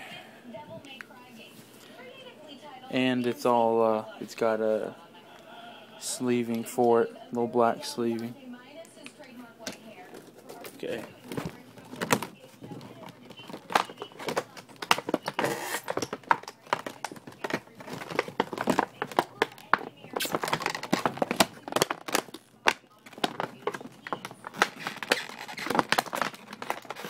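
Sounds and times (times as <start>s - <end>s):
plastic packaging crinkling: 9.6s - 27.0s.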